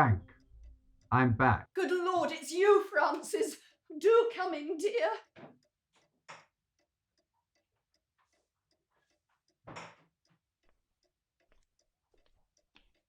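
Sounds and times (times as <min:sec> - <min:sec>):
clock ticking: 0:00.0 - 0:05.7.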